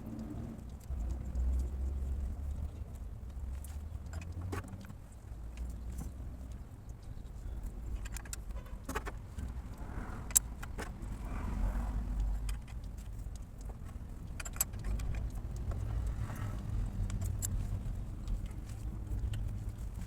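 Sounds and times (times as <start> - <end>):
steady low rumble: 0.0 - 20.0
metallic clicks of hand tools: 12.1 - 20.0.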